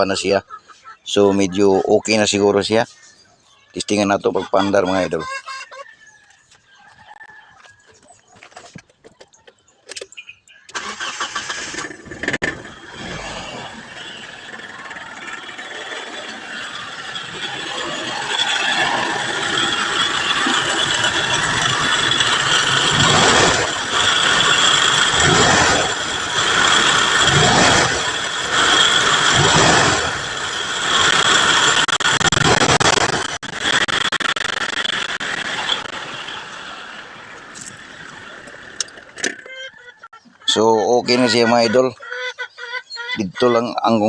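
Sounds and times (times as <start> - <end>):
engine starting and revving: 10.7 - 39.5.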